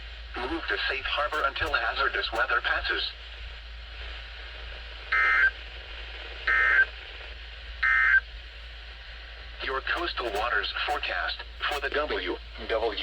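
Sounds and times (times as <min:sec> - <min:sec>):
steady radio hiss: 0:00.0 - 0:13.0
buzzy digital data bursts: 0:01.3 - 0:02.6.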